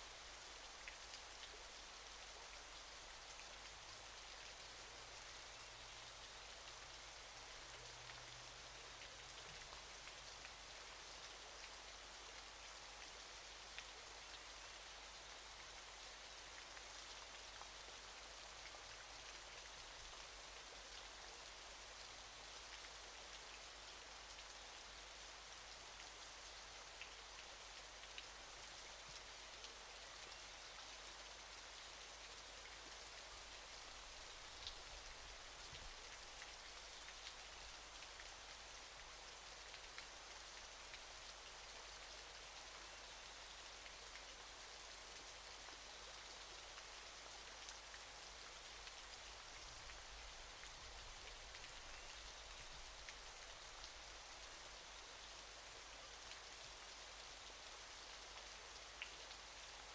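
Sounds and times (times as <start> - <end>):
hiss of falling water: 0.0 - 24.0.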